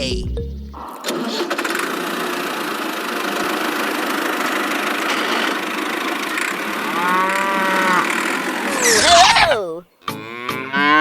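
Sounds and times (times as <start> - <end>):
tractor engine idling: 1.6 - 8.7
held pitched tone: 8.7 - 9.7.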